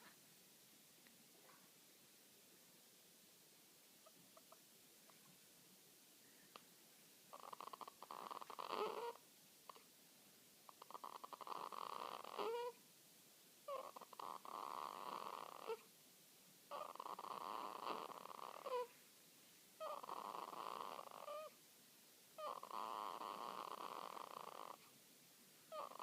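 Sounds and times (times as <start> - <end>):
baby snoring: 7.3 - 9.8, 10.7 - 12.8, 13.7 - 15.9, 16.7 - 19.0, 19.8 - 21.6, 22.4 - 24.9, 25.7 - 26.0.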